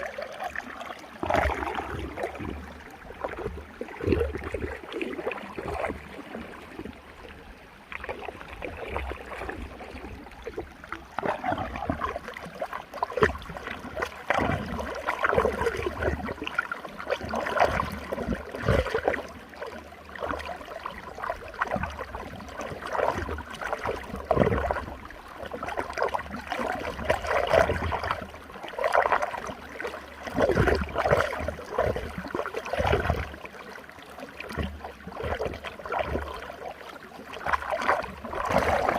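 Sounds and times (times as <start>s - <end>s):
water splashing: 0.0s - 38.9s
water swirling and gurgling: 0.0s - 38.9s.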